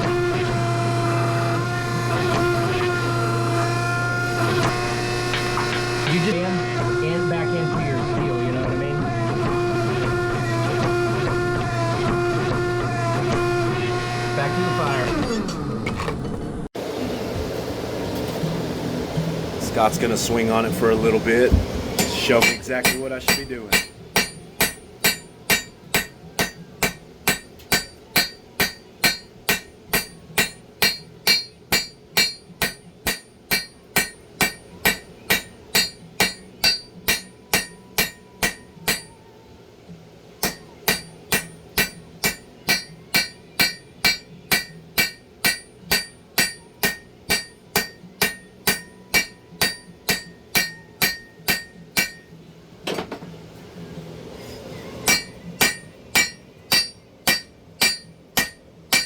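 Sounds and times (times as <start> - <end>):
hammer striking hot steel on anvil: 0.0 - 7.4, 21.5 - 39.2, 40.4 - 53.3, 55.0 - 59.0.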